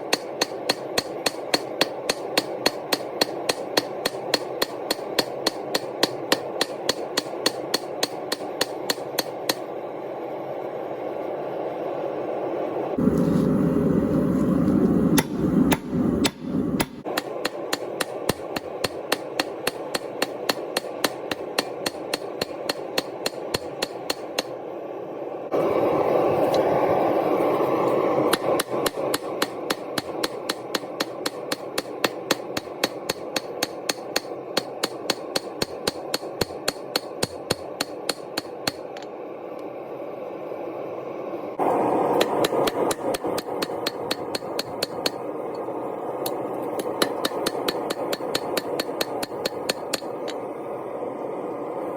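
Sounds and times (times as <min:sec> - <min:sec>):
hammer striking steel on anvil: 0:00.0 - 0:09.7, 0:15.1 - 0:24.6, 0:28.3 - 0:39.1, 0:42.2 - 0:45.2, 0:46.8 - 0:50.4
steady rushing noise: 0:00.0 - 0:51.9.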